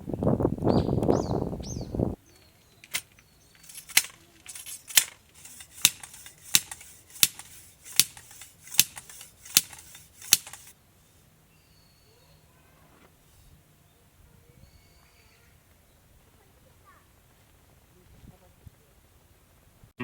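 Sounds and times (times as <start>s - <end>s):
sharp clicks: 2.4s - 10.7s.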